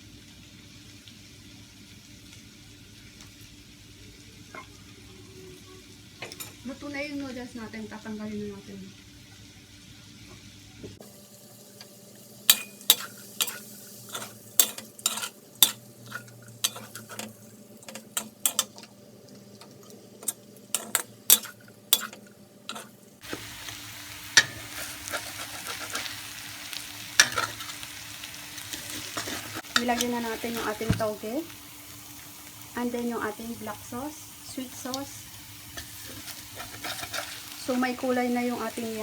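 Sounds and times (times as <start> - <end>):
food frying in a pan: 0.0 - 39.0
metal utensils scraping a pan: 12.5 - 18.9, 20.2 - 23.0, 24.3 - 28.0, 28.6 - 31.0, 35.7 - 37.8.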